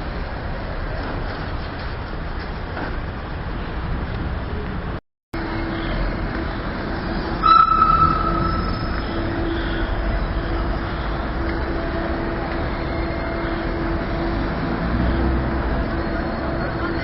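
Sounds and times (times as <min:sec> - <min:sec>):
train running with rumble and hum: 0:00.0 - 0:17.0
high wheel squeal: 0:05.4 - 0:17.0.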